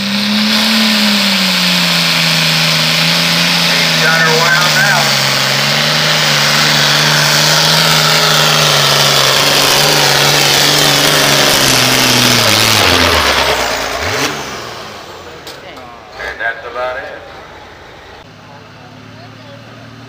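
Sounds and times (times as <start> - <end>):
diesel tractor engine under load: 0.0 - 20.0.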